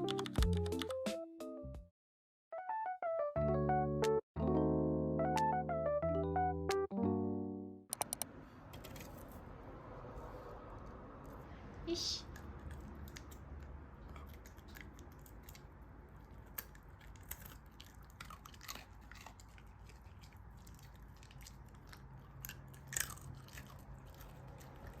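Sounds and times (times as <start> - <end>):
dog crunching a treat: 12.3 - 25.0.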